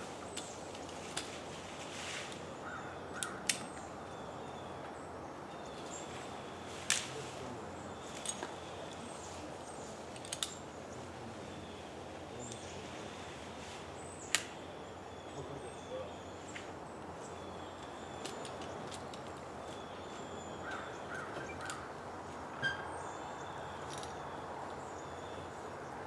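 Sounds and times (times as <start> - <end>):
sharp clicks or snaps: 14.3 - 14.5.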